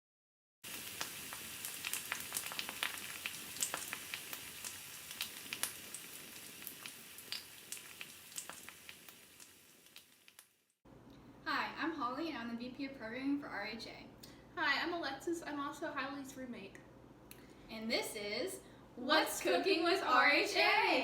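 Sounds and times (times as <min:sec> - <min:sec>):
sizzling hiss with crackles: 0:00.6 - 0:10.8.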